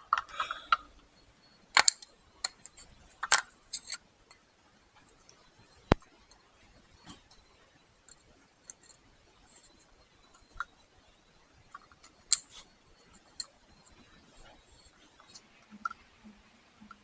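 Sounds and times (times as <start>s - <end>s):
tools clicking and tapping: 0.0s - 1.0s, 1.8s - 4.4s, 8.1s - 10.8s, 11.7s - 16.0s.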